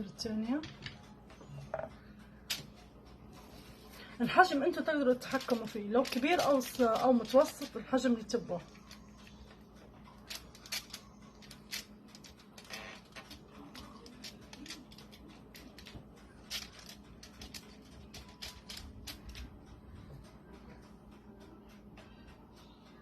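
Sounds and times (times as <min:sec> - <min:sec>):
utensils clicking and tapping: 0:04.0 - 0:22.2.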